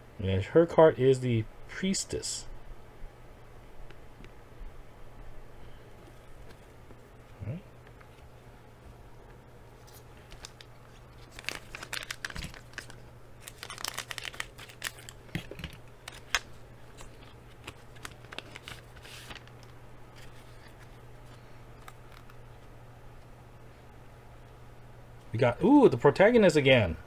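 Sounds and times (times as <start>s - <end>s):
card rustling: 9.8s - 22.8s
wrapper tearing and crinkling: 10.2s - 20.8s.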